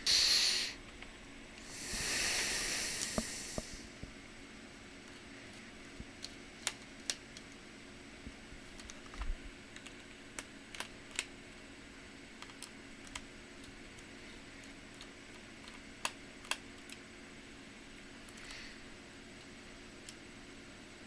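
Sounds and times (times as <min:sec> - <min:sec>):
small parts clicking and tapping: 0:06.0 - 0:07.6, 0:08.7 - 0:11.3, 0:12.4 - 0:17.1.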